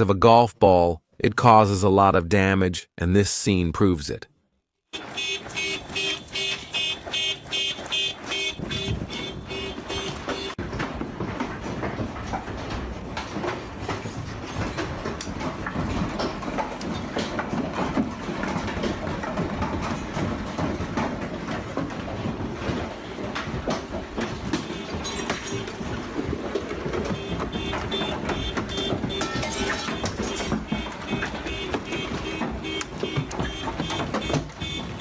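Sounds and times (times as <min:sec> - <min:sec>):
hailstones clattering on hard surfaces: 0:10.6 - 0:35.0.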